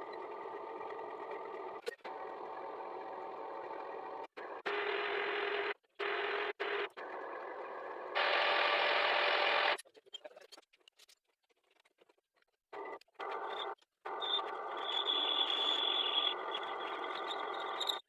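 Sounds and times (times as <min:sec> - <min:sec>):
machine humming: 0:02.1 - 0:09.8.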